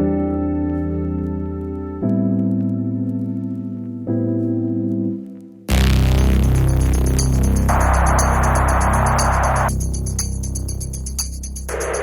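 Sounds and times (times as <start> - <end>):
electronic music with heavy bass: 5.7 - 12.0
hiss: 7.3 - 9.7.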